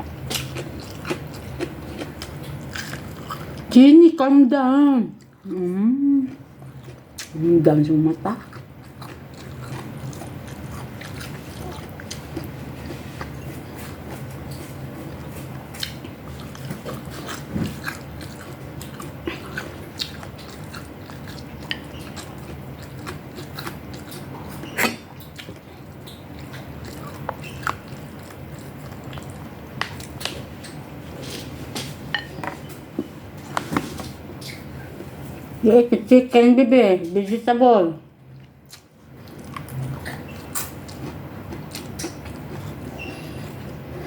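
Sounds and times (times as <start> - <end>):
low steady hum: 0.0 - 44.0
person chewing: 0.1 - 3.7, 5.2 - 7.4, 8.4 - 35.5, 38.3 - 44.0.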